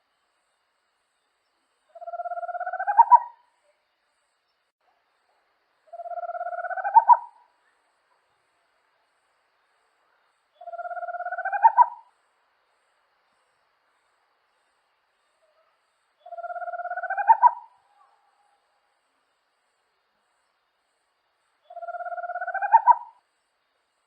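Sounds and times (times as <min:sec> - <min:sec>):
owl trilling call: 0:02.0 - 0:03.4, 0:05.9 - 0:07.5, 0:10.6 - 0:12.1, 0:16.2 - 0:18.2, 0:21.7 - 0:23.2.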